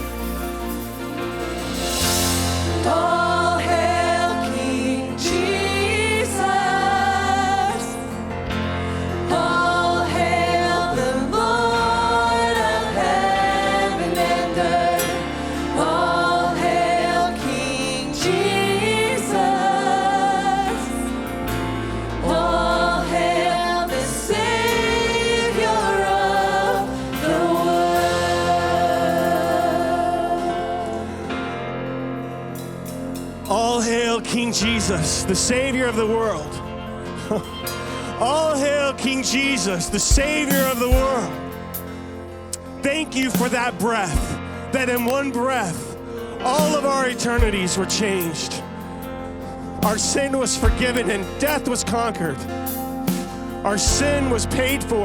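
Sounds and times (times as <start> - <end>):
several voices singing: 0.0 - 32.3, 33.5 - 55.0
steady bass: 0.0 - 55.0
worship band playing: 0.0 - 55.0.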